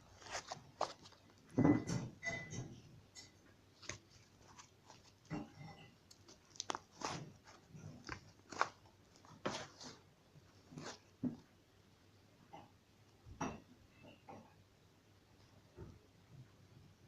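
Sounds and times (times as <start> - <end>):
slime squelching: 0.0 - 1.8, 3.6 - 11.2
slime crackling and popping: 6.1 - 9.3.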